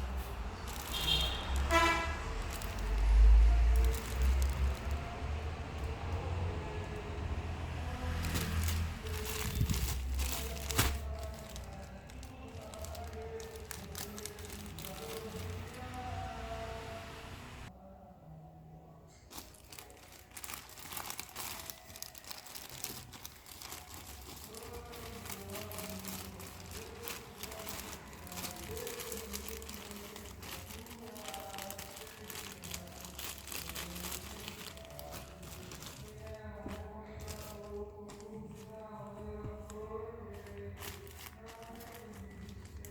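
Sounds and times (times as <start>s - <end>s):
plastic packaging crinkling: 0.0s - 7.0s, 7.6s - 17.7s, 19.3s - 42.9s.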